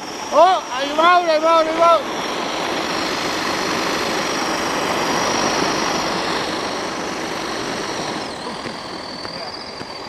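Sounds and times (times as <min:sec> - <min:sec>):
electric motor hissing: 0:00.0 - 0:10.0
high motor whine: 0:00.0 - 0:10.0.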